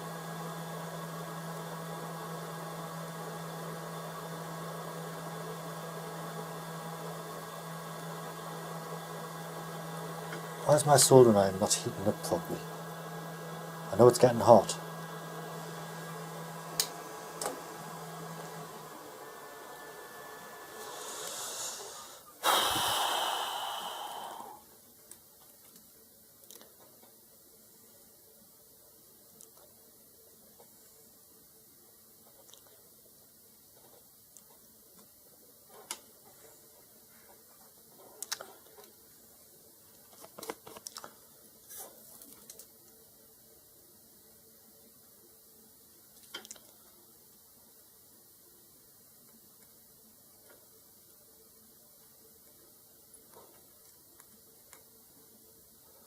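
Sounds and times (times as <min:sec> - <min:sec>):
steady low hum: 0:00.0 - 0:24.9
constant hiss: 0:07.8 - 0:56.0
soldering iron sizzling in flux: 0:19.8 - 0:24.6
faint small clicks: 0:46.2 - 0:46.8.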